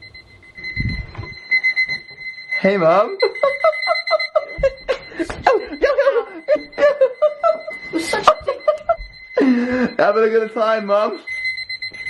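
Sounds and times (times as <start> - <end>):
alarm clocks ringing: 0.0 - 12.0.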